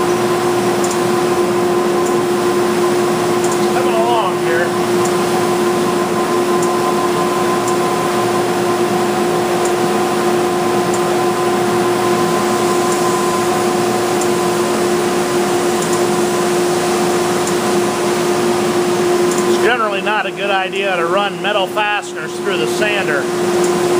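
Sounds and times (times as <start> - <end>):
belt sander hum: 0.0 - 23.9
faint high ticks: 15.8 - 16.0.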